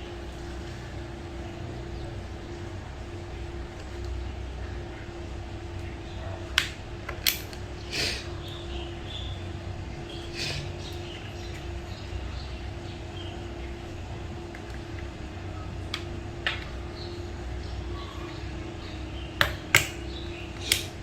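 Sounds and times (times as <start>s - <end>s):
steady low hum: 0.0s - 21.0s
memory modules clicking into slots: 6.6s - 7.6s.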